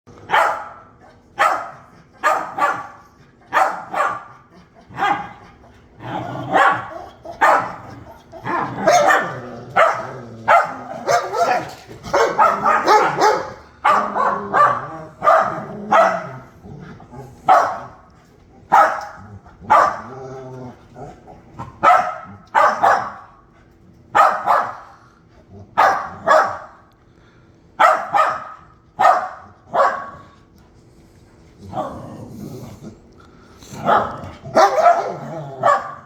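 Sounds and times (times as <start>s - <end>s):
small dog barking: 0.2s - 4.4s, 5.0s - 5.4s, 6.5s - 16.5s, 17.4s - 18.0s, 18.7s - 20.1s, 21.6s - 23.4s, 24.1s - 24.9s, 25.8s - 26.8s, 27.8s - 30.3s, 33.8s - 36.0s.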